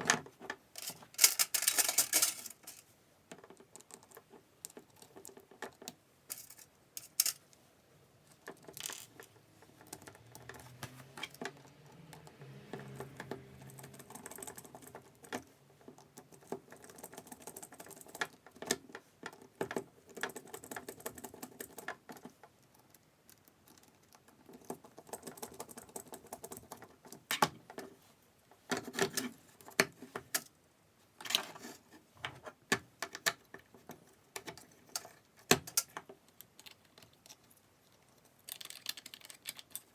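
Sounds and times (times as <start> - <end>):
small hard objects clicking: 38.4 - 39.9.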